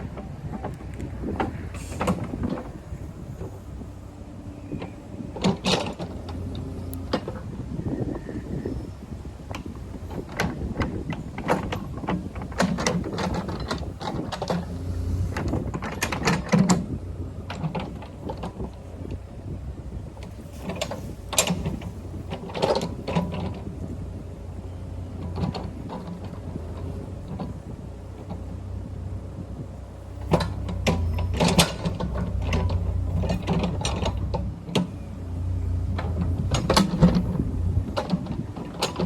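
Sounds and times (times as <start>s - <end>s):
metal clanks and knocks: 20.2s - 23.8s, 30.2s - 35.0s, 35.8s - 39.0s.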